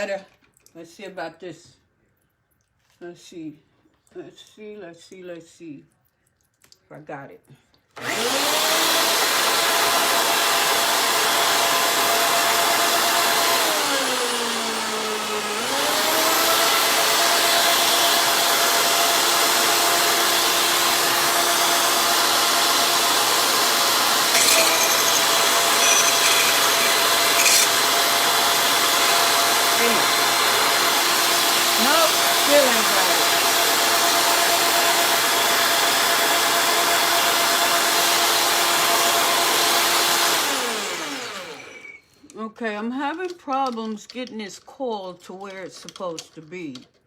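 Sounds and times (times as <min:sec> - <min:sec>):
power drill motor whining: 0:08.0 - 0:42.2.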